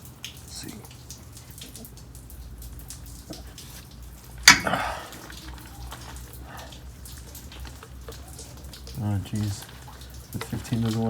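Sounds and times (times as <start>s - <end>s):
wrench clank with rattle: 4.5s - 4.8s.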